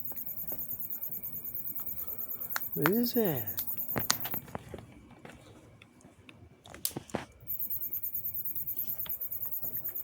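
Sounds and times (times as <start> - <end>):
rapid high-pitched rhythmic squeaking: 0.0 - 4.4, 7.5 - 10.0
sharp clicks: 2.5 - 4.4.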